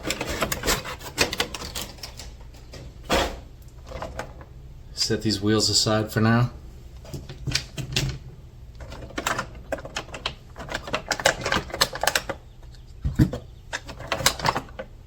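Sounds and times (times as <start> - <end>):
small hardware parts clattering: 0.0 - 4.4, 8.8 - 12.4, 13.1 - 14.9.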